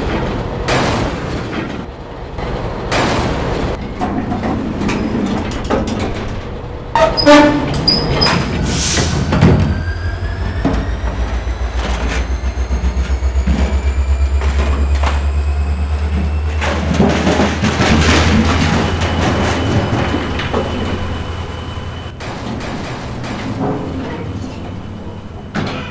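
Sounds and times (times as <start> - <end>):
diesel locomotive engine rumble: 0.0 - 25.9.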